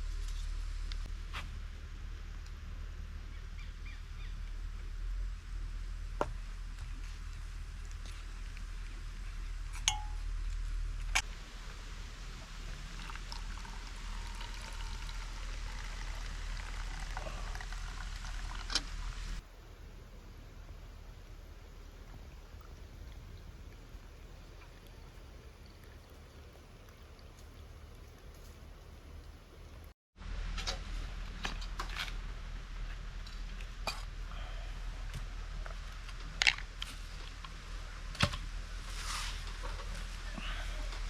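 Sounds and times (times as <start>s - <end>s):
quiet ambience: 0.0s - 41.0s
faint rushing water: 11.2s - 29.9s.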